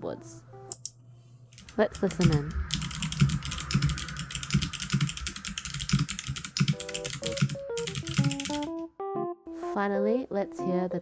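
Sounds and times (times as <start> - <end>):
background music: 0.0 - 11.0
mechanical keyboard clicks: 1.6 - 8.7.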